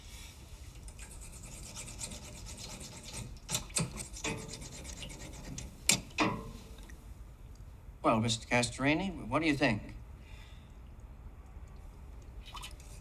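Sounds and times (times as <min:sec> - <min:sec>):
rasping scrapes: 0:00.9 - 0:06.0.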